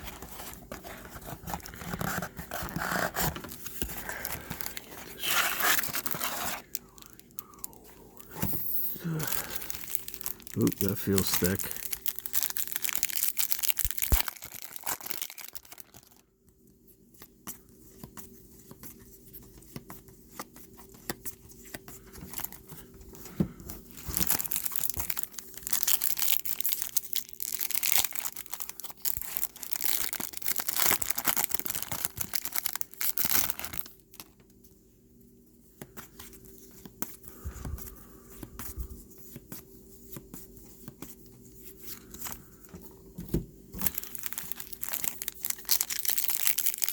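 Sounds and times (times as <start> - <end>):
foil wrappers tearing and crinkling: 0.0 - 7.8, 8.9 - 16.2, 23.9 - 34.3, 43.8 - 46.9
handling of card packs: 0.0 - 16.2, 17.5 - 34.7, 35.8 - 46.9.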